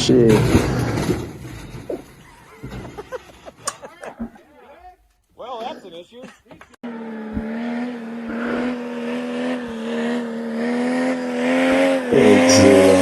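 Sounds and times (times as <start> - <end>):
off-road engine at high revs: 6.8 - 13.0
lower engine note: 6.9 - 13.0.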